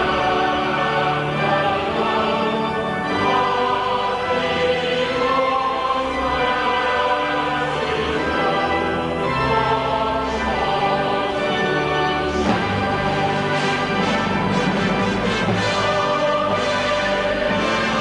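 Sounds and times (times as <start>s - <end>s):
choir singing: 0.0s - 18.0s
orchestra playing: 12.2s - 18.0s.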